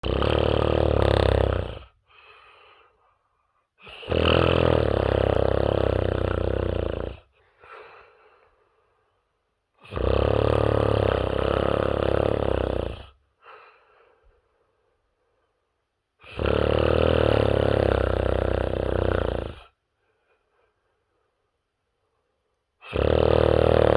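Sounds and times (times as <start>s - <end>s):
person snoring heavily: 0.0s - 2.4s, 3.8s - 8.0s, 9.8s - 13.2s, 16.2s - 19.7s, 22.8s - 23.9s
quiet breath: 1.8s - 4.0s, 7.2s - 9.6s, 13.0s - 15.8s, 19.6s - 22.8s.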